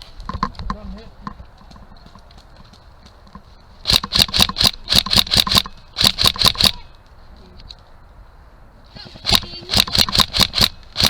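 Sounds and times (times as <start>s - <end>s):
airsoft gun shots: 3.8s - 6.8s, 9.2s - 11.0s.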